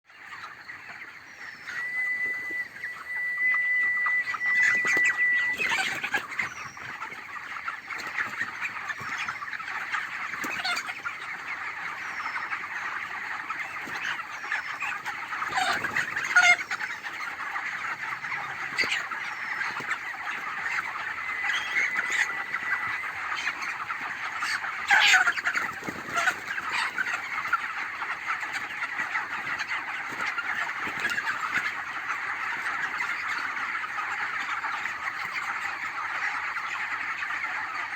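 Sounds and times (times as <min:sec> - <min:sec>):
chickens peeping: 0:00.1 - 0:37.9
steady high tone: 0:01.6 - 0:05.9, 0:21.0 - 0:23.2.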